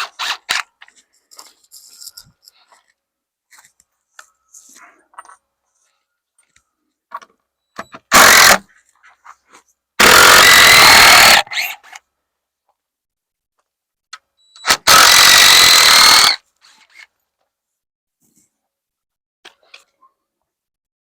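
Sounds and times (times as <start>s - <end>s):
power tool whining: 8.1s - 8.6s, 10.0s - 11.6s, 14.6s - 16.4s.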